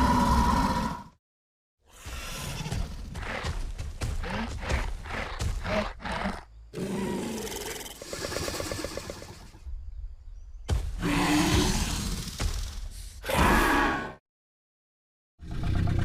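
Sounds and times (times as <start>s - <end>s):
creature snarling and grunting: 0.0s - 1.2s, 1.9s - 9.2s, 11.0s - 12.4s, 13.2s - 14.2s
creature growl and rattling purr: 6.0s - 9.6s, 15.4s - 16.0s.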